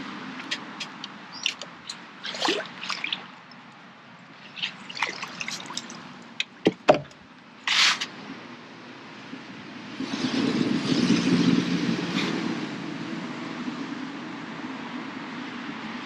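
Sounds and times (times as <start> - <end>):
water splashing and dripping: 0.3 - 7.3
sharp knocks: 6.4 - 7.2
short hissing splash: 7.7 - 8.1.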